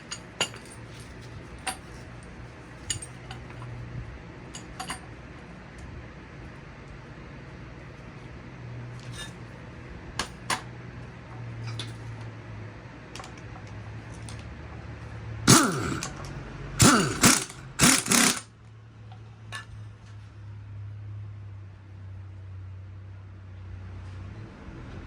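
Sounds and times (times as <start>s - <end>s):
power tool winding down: 15.5s - 16.2s, 16.8s - 18.5s.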